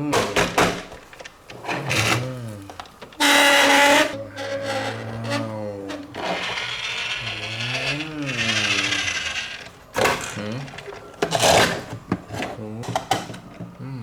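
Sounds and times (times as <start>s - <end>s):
toy electric motor whirring: 1.5s - 12.0s.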